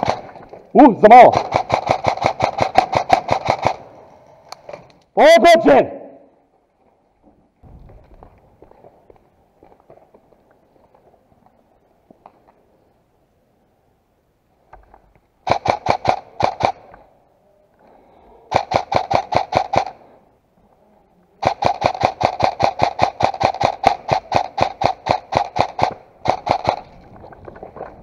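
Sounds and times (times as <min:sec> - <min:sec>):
airsoft gun firing bursts: 0:00.0 - 0:00.4, 0:01.2 - 0:03.9, 0:15.4 - 0:16.9, 0:18.5 - 0:20.0, 0:21.4 - 0:26.9.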